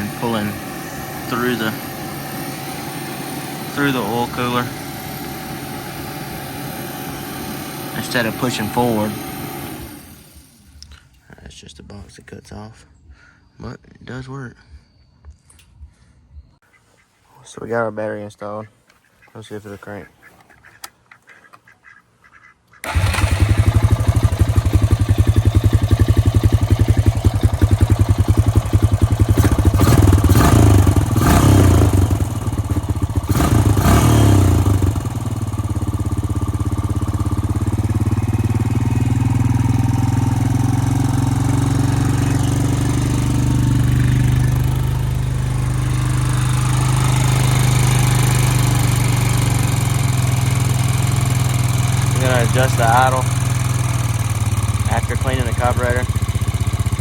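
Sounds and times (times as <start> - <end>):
atv engine starting and idling: 0.0 - 11.2, 22.8 - 57.0.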